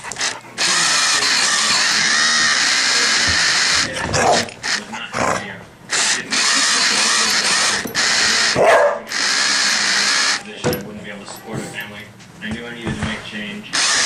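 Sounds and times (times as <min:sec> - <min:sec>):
toy car motor whirring: 0:00.1 - 0:04.9, 0:06.0 - 0:10.5
dog barking: 0:08.6 - 0:09.1.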